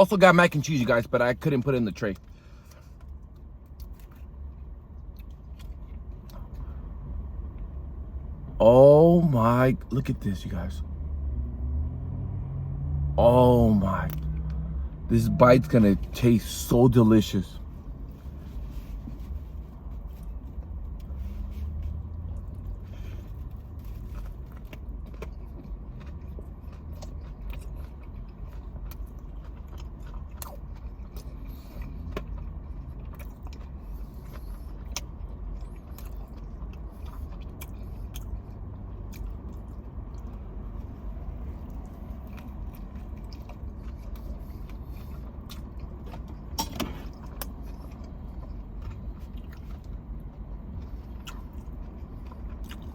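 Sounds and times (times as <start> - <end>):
steady low hum: 0.0 - 52.9
person chewing food: 2.2 - 6.8, 18.1 - 52.9.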